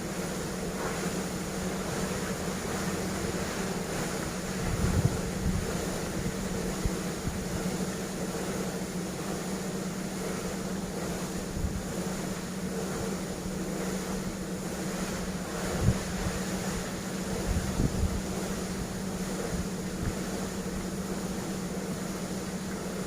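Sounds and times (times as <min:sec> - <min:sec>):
factory mechanical hum: 0:00.0 - 0:23.0
wind on microphone: 0:01.7 - 0:08.5, 0:10.2 - 0:21.5.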